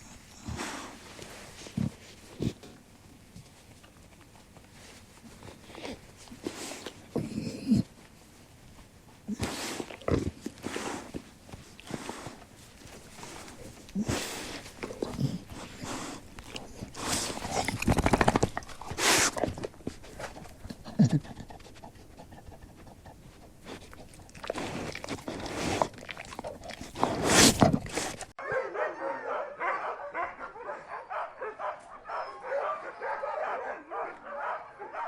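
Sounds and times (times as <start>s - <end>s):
dogs barking: 28.4s - 35.0s.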